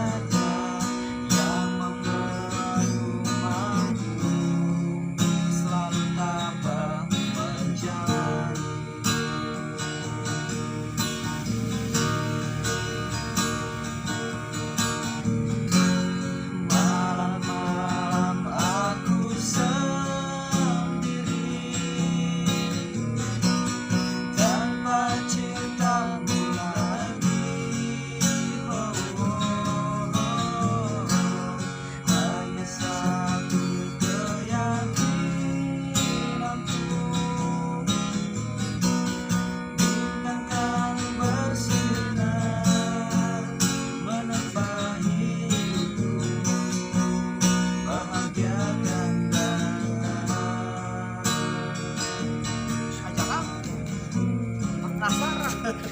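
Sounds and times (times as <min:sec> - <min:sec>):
person singing: 0:00.0 - 0:39.0, 0:52.9 - 0:55.9
acoustic guitar strumming: 0:00.0 - 0:55.9.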